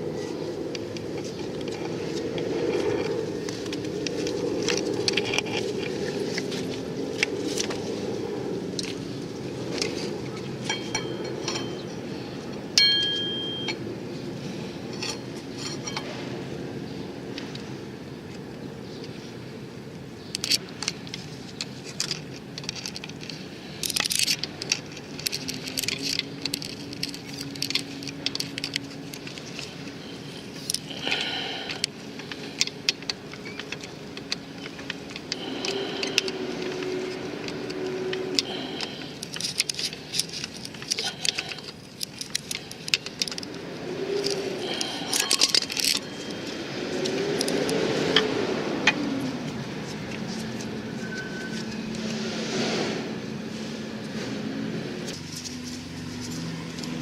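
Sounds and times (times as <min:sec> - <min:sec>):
metal tools clinking and rattling: 0:09.8 - 0:12.0, 0:12.8 - 0:13.8, 0:15.0 - 0:16.1, 0:21.7 - 0:36.4, 0:38.4 - 0:43.5, 0:44.1 - 0:48.2.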